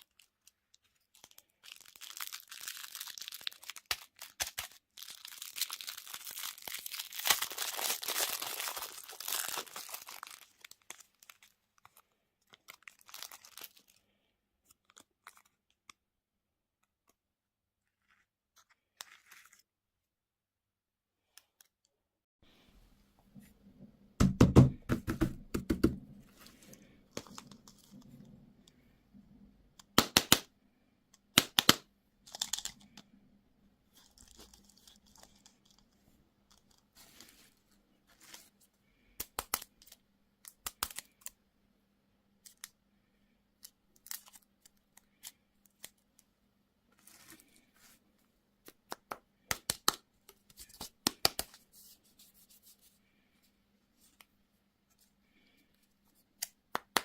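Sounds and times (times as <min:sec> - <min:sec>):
packaging tearing and crinkling: 0:00.0 - 0:11.5, 0:12.5 - 0:14.0.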